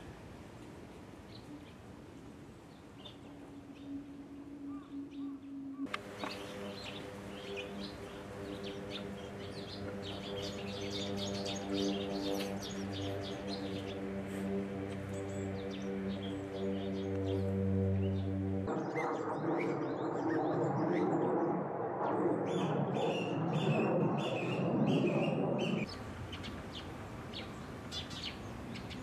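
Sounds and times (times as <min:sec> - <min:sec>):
small birds chirping: 0:02.7 - 0:21.0, 0:22.4 - 0:29.0
background music held tones: 0:03.1 - 0:18.8.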